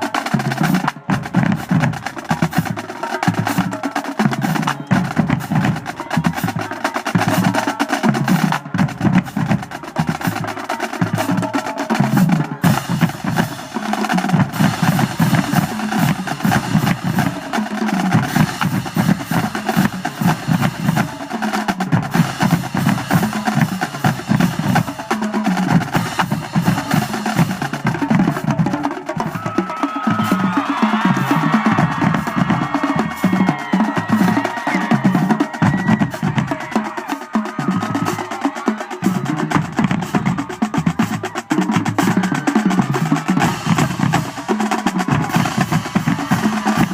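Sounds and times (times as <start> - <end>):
marching drumline cadence: 0.0 - 46.9.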